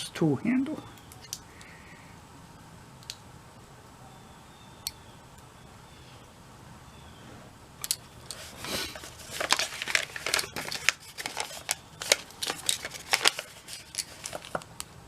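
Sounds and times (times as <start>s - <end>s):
hand tools clicking and rattling: 7.8s - 14.6s.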